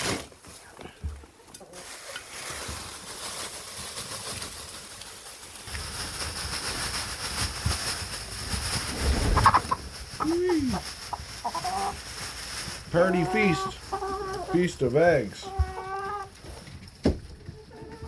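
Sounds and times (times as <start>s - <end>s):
rustling and shuffling: 0.0s - 18.0s
chickens clucking: 6.4s - 18.0s.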